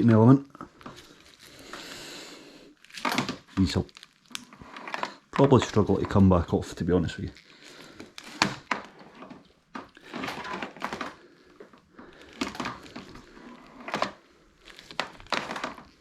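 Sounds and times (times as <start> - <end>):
rubber grip rubbing and scraping: 2.9 - 16.0.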